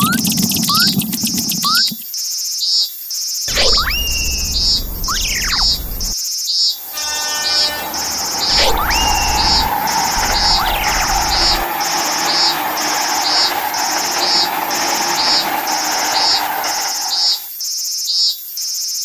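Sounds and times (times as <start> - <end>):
insects chirping: 0.2 - 18.0
bird falling whistle: 3.5 - 6.2, 6.9 - 13.4
steady hum: 3.5 - 6.2, 6.8 - 17.4
train rumbling past: 3.5 - 6.2, 6.8 - 17.5.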